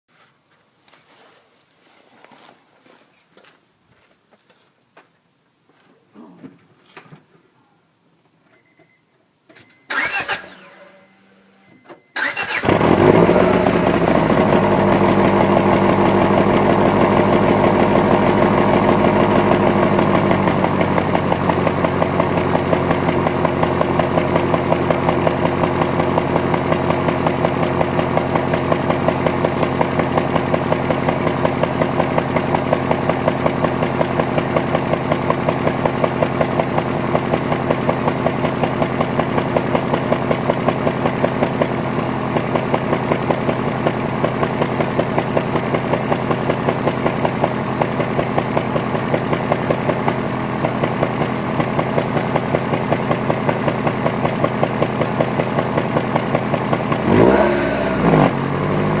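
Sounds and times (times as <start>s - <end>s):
car engine idling roughly: 12.3s - 57.4s.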